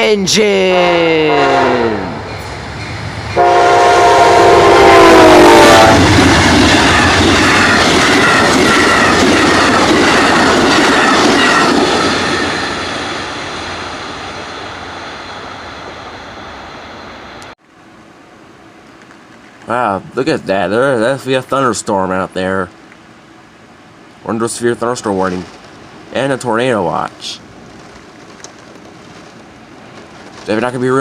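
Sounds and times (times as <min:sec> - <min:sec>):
train horn chord: 0:01.3 - 0:02.2, 0:03.4 - 0:06.1
train cars clickety-clack: 0:06.0 - 0:13.4, 0:27.6 - 0:31.0.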